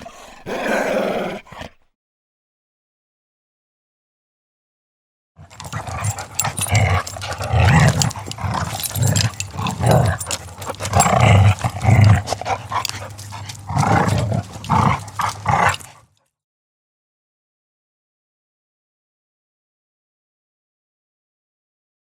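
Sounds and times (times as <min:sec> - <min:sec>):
dog vocalizing in low bursts: 0:00.0 - 0:01.8.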